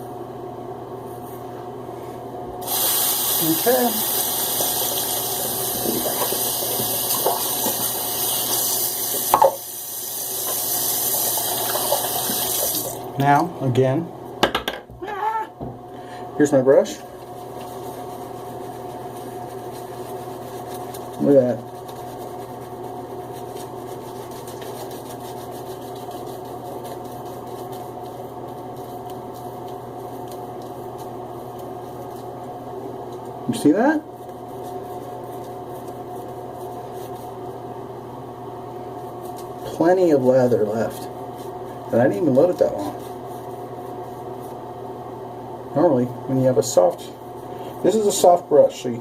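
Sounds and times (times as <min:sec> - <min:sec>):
tap water running into sink: 0:04.2 - 0:09.7, 0:10.4 - 0:13.1.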